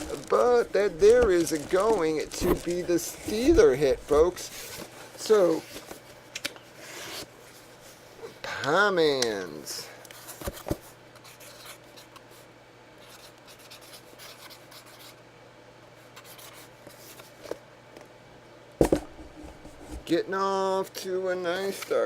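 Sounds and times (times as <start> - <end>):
faint rubbing and handling noises: 0.0 - 8.8
steady low hum: 0.0 - 22.0.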